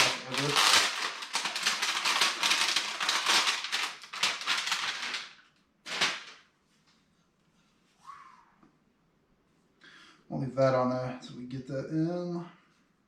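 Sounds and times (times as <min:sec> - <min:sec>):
packaging crackling and rustling: 0:00.0 - 0:06.5.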